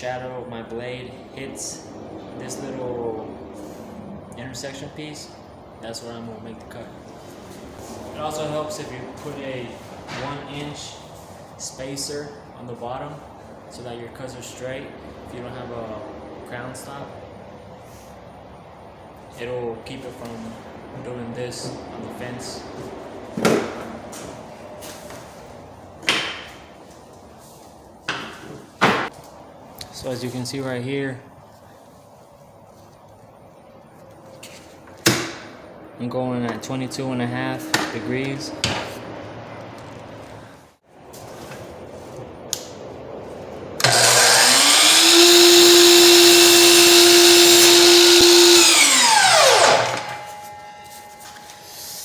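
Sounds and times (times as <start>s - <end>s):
miter saw whining: 43.8s - 51.6s.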